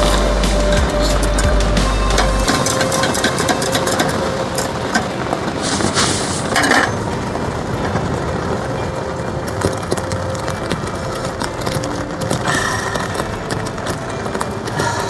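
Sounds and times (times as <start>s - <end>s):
heavy rain on a tarp: 0.0s - 15.0s
dishes clinking: 2.2s - 5.2s.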